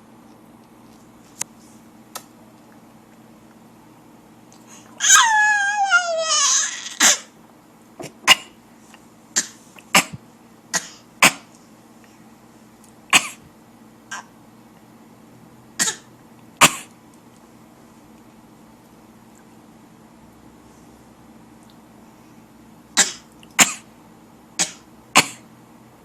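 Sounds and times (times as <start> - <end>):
baby squealing: 5.0 - 7.3
baby and adult coughing: 6.9 - 7.4, 8.0 - 8.6, 9.4 - 11.5, 13.1 - 13.5, 15.8 - 16.9, 23.0 - 23.9, 24.6 - 25.5.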